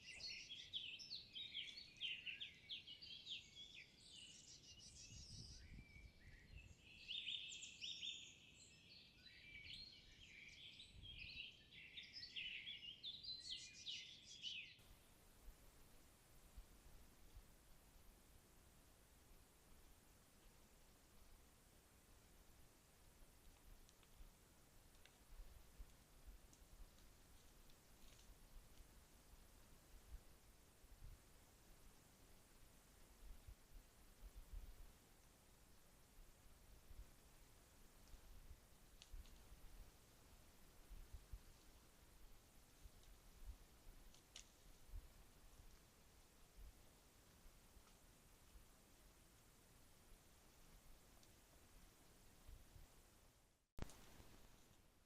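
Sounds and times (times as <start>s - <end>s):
songbirds singing: 0.0s - 15.0s
faint hiss: 14.6s - 55.0s
faint soft ticks: 22.1s - 53.0s, 53.8s - 54.9s.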